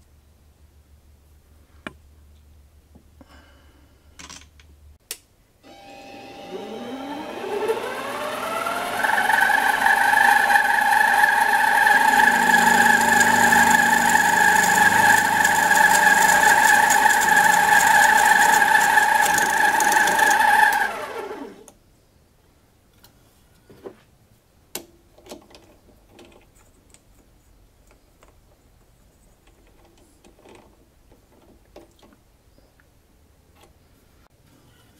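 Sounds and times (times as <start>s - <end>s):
metal lathe whining: 5.7s - 21.6s.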